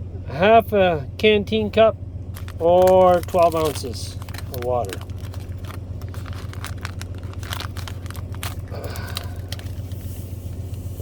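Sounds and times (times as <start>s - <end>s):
steady low hum: 0.0s - 11.0s
plastic packaging crinkling: 2.3s - 10.2s.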